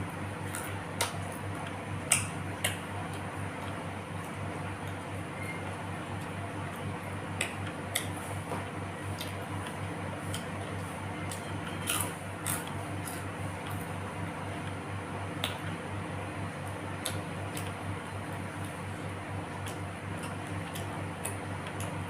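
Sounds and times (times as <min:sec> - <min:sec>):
person chewing food: 0:00.4 - 0:05.1, 0:06.1 - 0:13.9, 0:19.5 - 0:22.0.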